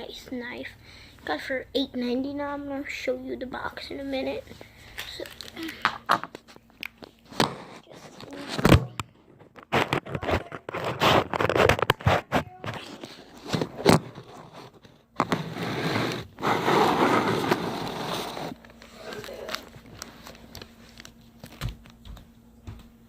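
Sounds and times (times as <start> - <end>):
rustling and scraping: 6.1 - 21.6.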